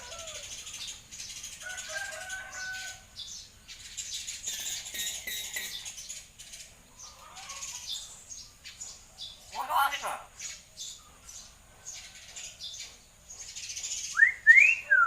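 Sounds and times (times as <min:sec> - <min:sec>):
bird whistling: 0:14.1 - 0:15.0.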